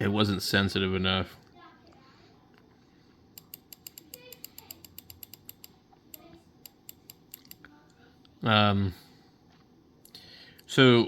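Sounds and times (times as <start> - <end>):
mouse scroll wheel clicks: 3.4 - 7.6.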